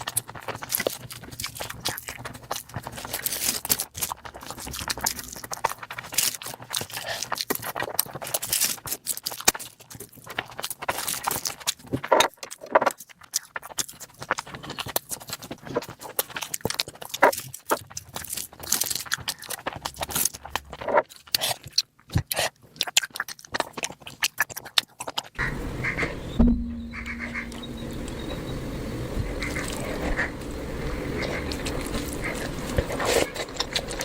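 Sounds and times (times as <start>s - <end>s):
chewing food close up: 0.0s - 26.3s, 29.1s - 34.0s.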